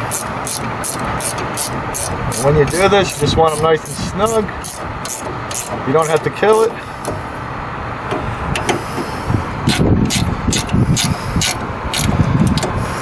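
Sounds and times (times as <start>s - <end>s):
wrench metallic clicks: 0.0s - 6.3s, 9.7s - 12.8s.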